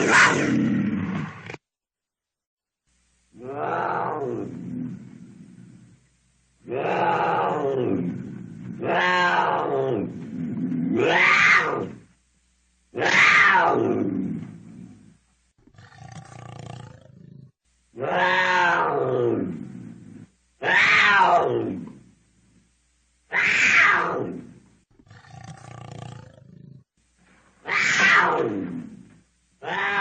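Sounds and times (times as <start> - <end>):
cougar screaming: 0.0 - 0.9, 3.4 - 4.6, 6.7 - 8.0, 8.8 - 10.1, 10.9 - 12.0, 13.0 - 14.1, 18.0 - 19.6, 20.6 - 21.8, 23.3 - 24.5, 27.6 - 28.9, 29.6 - 30.0
low cougar calls: 27.6 - 30.0.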